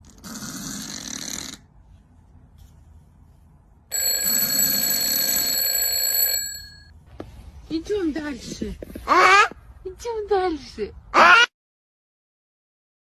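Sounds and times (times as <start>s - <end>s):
bell ringing continuously: 3.9s - 6.9s.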